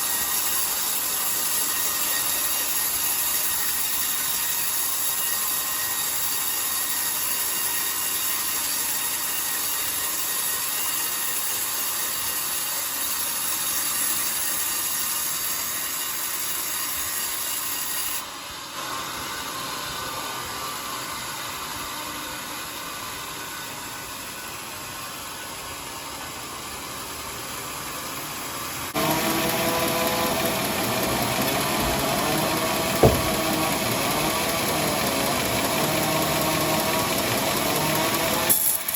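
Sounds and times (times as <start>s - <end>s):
bandsaw cutting log: 27.8s - 38.9s
machine humming: 29.0s - 35.6s
sharp knock: 33.0s - 33.6s.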